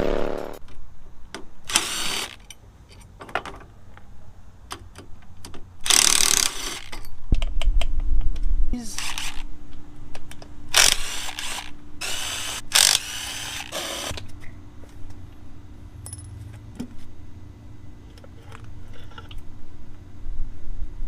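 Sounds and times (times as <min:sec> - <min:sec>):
tools and parts clinking: 0:02.2 - 0:04.0, 0:16.0 - 0:16.6.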